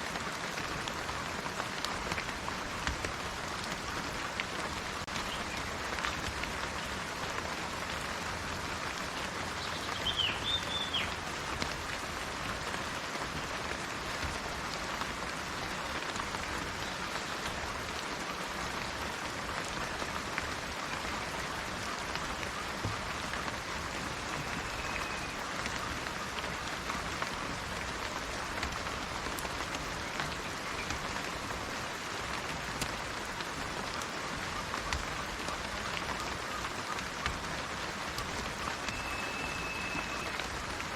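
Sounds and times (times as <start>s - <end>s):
rain hissing: 0.0s - 40.9s
bird chirps: 38.8s - 40.3s.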